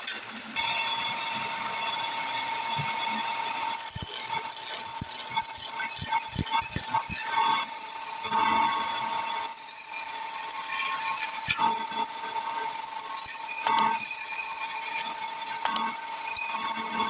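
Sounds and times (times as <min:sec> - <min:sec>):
wood lathe whining: 0:00.4 - 0:17.0
turning tool clicks and knocks: 0:13.2 - 0:14.1, 0:15.0 - 0:16.0.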